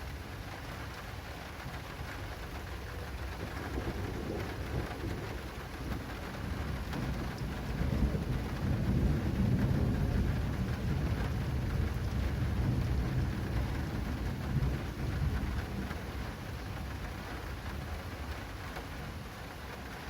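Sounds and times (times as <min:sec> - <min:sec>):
heavy rain: 0:00.0 - 0:20.0
raindrops pattering on an awning: 0:00.0 - 0:20.0
thunder rumbling: 0:02.8 - 0:20.0.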